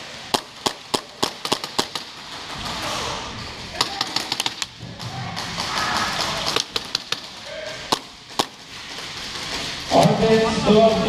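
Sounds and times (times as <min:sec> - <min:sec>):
airsoft guns firing: 0:00.0 - 0:02.6, 0:03.7 - 0:10.3.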